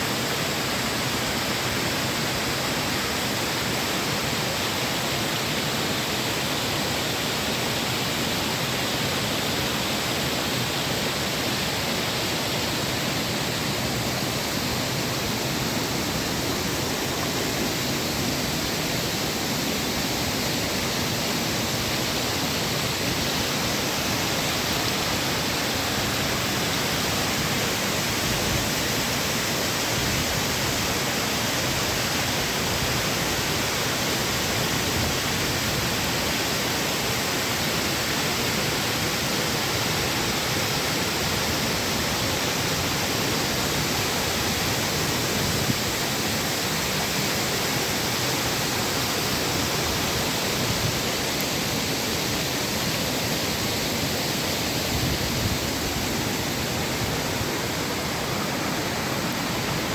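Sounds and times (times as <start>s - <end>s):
waterfall rushing: 0.0s - 59.9s.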